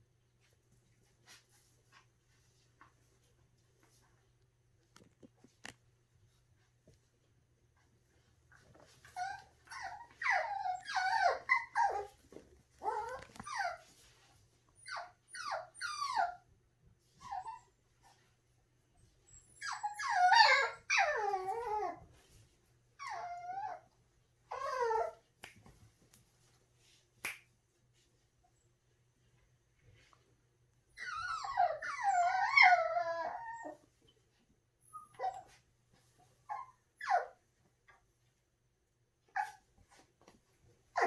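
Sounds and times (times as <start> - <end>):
puppies whining and yelping: 8.8 - 14.1, 14.7 - 18.3, 19.0 - 22.1, 23.0 - 25.2, 30.8 - 34.0, 34.8 - 35.6, 36.4 - 37.4, 39.2 - 40.1.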